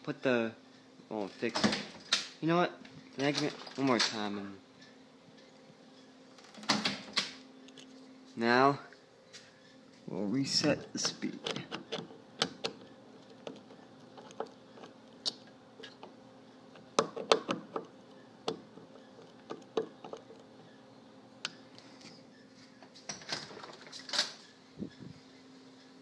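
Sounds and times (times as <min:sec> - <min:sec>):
faint steady hum: 0:00.0 - 0:26.0
light clicks and knocks of hand work: 0:10.6 - 0:20.5.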